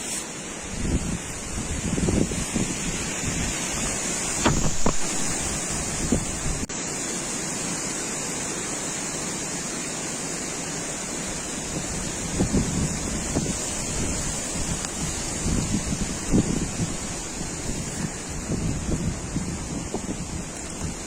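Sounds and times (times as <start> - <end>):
wind buffeting microphone: 0.6 - 6.7, 11.6 - 21.0.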